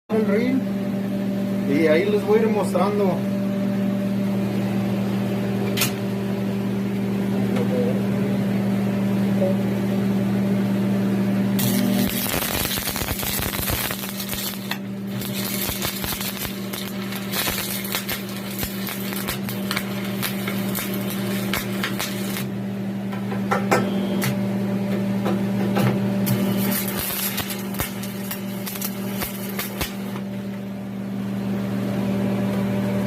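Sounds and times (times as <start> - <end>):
welding arc crackling: 11.6 - 22.6, 26.2 - 30.4.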